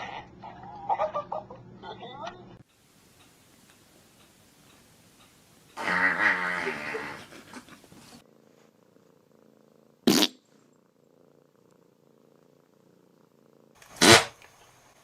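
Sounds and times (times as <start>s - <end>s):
cat purring: 3.6s - 15.0s.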